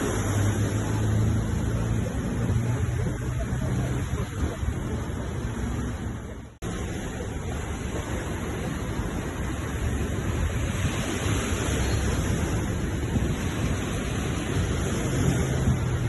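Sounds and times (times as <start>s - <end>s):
ocean waves surging on shore: 0.0s - 16.0s.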